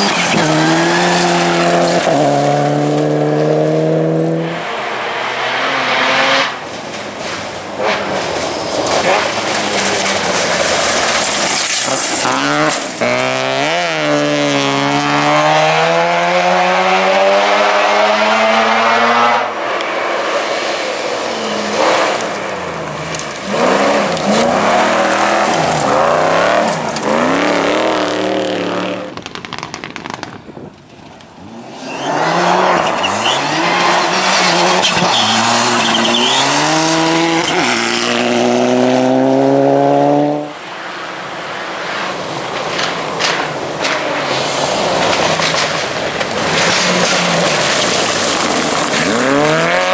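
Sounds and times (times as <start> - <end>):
tyre squeal: 0.0 - 2.3, 21.2 - 27.4, 31.8 - 37.9
rally car engines revving: 0.0 - 29.2, 31.2 - 49.9.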